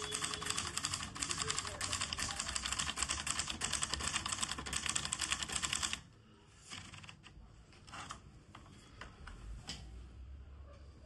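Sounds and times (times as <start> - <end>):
typewriter keystrokes: 0.0 - 6.0.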